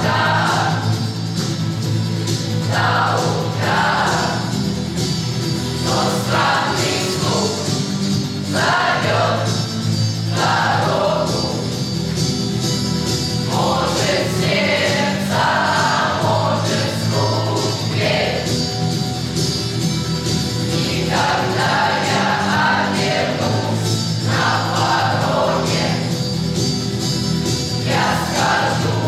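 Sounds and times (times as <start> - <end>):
youth choir singing: 0.0 - 1.1, 2.6 - 4.8, 5.7 - 11.8, 13.4 - 18.7, 20.7 - 26.3, 27.8 - 29.0.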